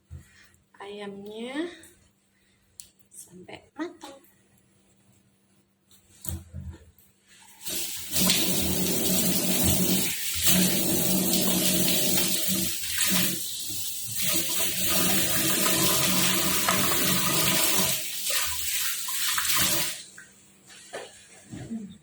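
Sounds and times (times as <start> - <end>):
water running from a tap: 7.5 - 20.2.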